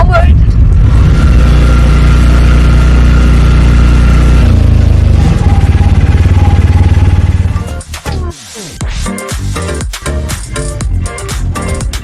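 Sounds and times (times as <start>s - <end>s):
bus engine running: 0.0s - 8.7s.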